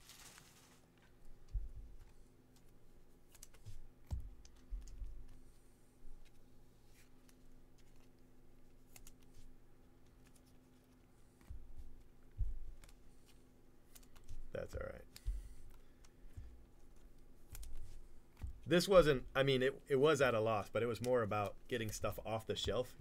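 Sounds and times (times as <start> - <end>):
soft thumps: 18.3 - 19.2.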